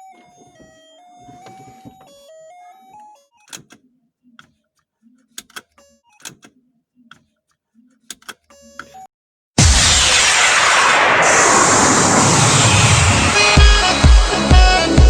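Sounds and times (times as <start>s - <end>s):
seat belt reminder buzzer melody: 0.0s - 7.4s.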